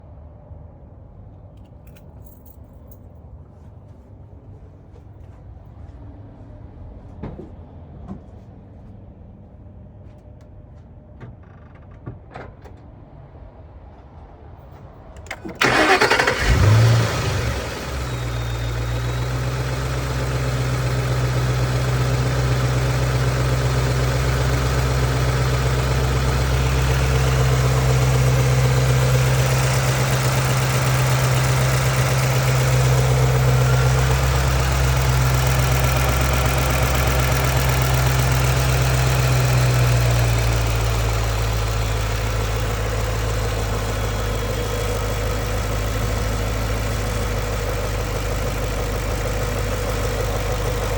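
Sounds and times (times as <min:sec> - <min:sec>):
car engine idling: 0:15.2 - 0:50.9
engine tapping: 0:15.2 - 0:50.9
fuel injectors ticking: 0:15.3 - 0:50.9.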